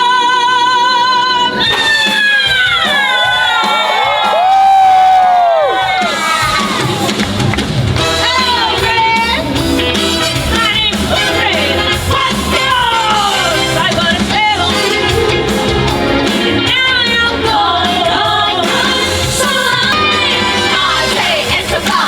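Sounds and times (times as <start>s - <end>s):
dense bass music: 7.3s - 21.8s
person singing: 10.2s - 22.0s.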